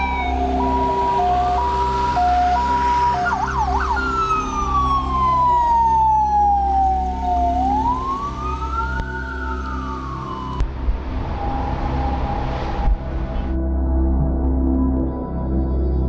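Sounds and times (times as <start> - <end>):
ambulance siren wailing: 0.0 - 10.6.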